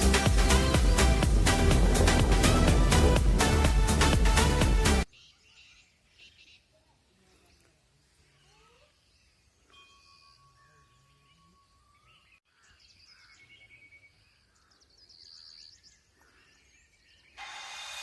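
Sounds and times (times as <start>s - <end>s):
birds chirping and trilling: 0.0s - 17.5s
loud hiss: 17.4s - 18.0s.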